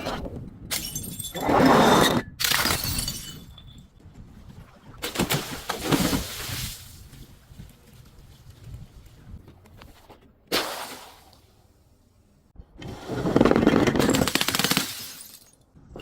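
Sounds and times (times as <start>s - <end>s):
glass bottle shattering and crunching: 0.7s - 1.5s, 2.4s - 3.9s, 13.6s - 15.6s.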